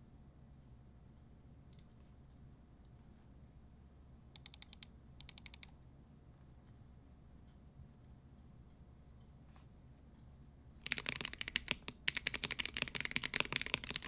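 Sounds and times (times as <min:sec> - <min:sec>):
mechanical keyboard typing: 0:04.4 - 0:05.7, 0:10.8 - 0:14.0.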